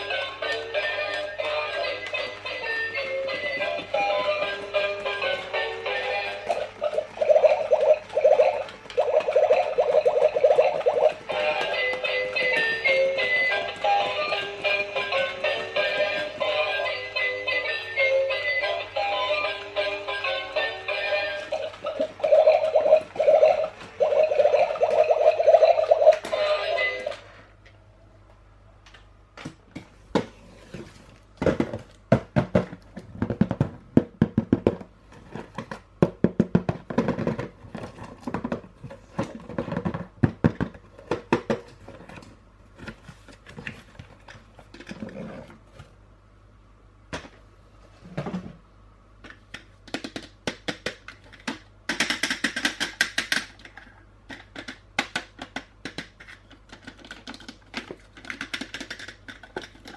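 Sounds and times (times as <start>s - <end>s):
plastic toys and packaging handled: 29.8s - 46.0s, 49.2s - 59.9s.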